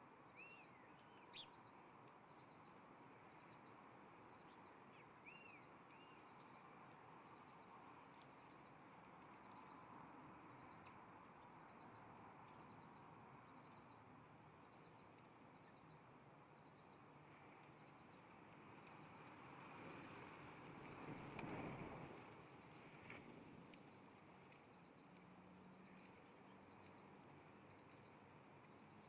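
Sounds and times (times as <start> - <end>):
faint birds chirping: 0.0 - 29.0
steady outdoor hiss: 0.0 - 29.0
quiet high triple tick: 5.9 - 9.9, 14.7 - 17.0, 18.8 - 19.3, 23.6 - 29.0.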